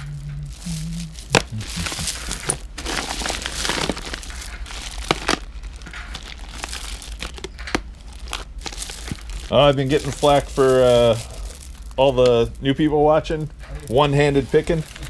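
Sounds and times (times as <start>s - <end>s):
bead necklaces rustling: 0.0s - 15.0s.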